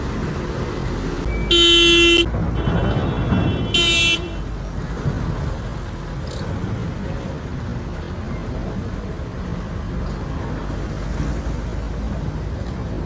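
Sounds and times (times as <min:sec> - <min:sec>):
road traffic rumble: 0:00.0 - 0:13.0
vehicle horn honking: 0:01.4 - 0:04.5.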